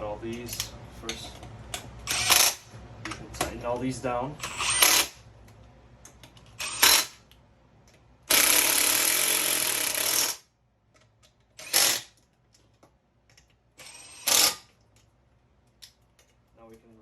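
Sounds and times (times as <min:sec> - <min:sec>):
power tool tightening bolts: 0:02.1 - 0:02.6, 0:04.4 - 0:05.2, 0:06.6 - 0:07.2, 0:08.3 - 0:10.4, 0:11.6 - 0:12.2, 0:13.8 - 0:14.7.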